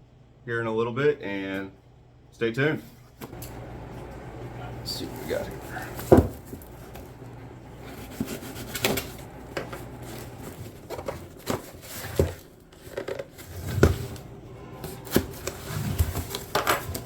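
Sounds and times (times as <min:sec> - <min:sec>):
packaging rustling: 0:04.9 - 0:17.0.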